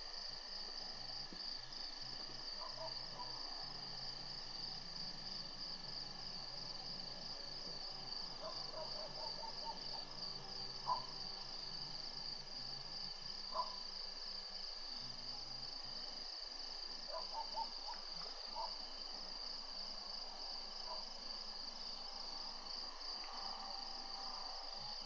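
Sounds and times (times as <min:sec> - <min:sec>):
night insects chorus: 0:00.0 - 0:25.0.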